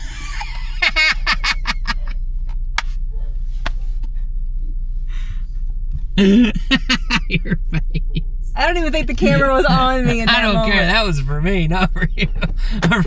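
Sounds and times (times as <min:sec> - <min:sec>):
person laughing: 0:00.0 - 0:02.1, 0:06.2 - 0:08.2, 0:09.0 - 0:13.0
steady low hum: 0:00.0 - 0:13.0.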